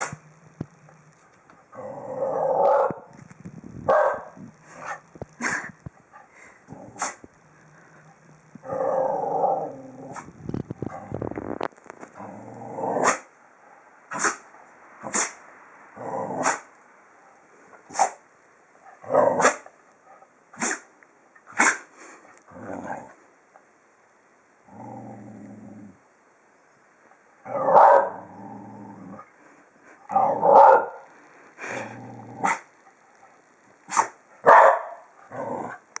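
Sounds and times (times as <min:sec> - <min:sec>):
animal sneezes: 0:05.4 - 0:05.8, 0:14.1 - 0:14.4, 0:15.1 - 0:15.4, 0:17.9 - 0:18.2, 0:20.6 - 0:20.9, 0:21.5 - 0:22.1, 0:33.9 - 0:34.2
animal low growls: 0:08.6 - 0:13.1, 0:24.6 - 0:26.0, 0:27.5 - 0:29.4, 0:31.6 - 0:32.7, 0:35.3 - 0:35.9.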